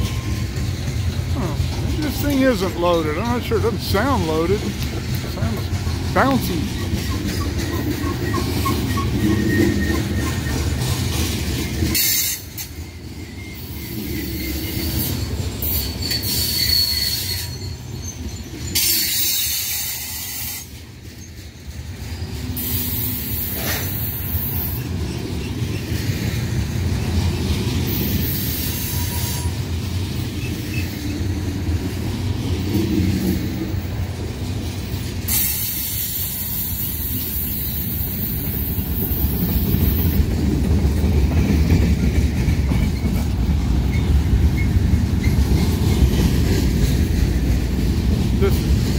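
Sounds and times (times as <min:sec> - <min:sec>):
train wheels clattering on rails: 0:00.0 - 0:48.9
high wheel squeals: 0:06.6 - 0:21.6, 0:27.9 - 0:31.3.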